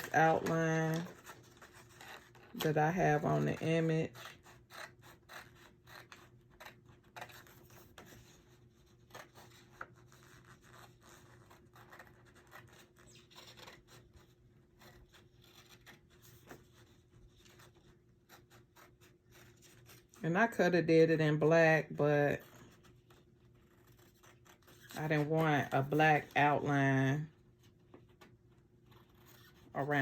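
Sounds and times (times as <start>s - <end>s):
scissors cutting cardstock: 0.0s - 8.3s.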